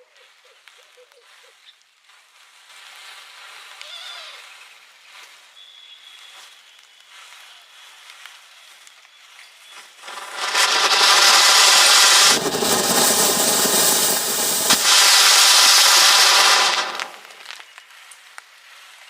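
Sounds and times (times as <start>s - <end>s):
fireworks fizzing hiss: 9.8s - 17.7s
sharp crack: 10.0s - 17.7s.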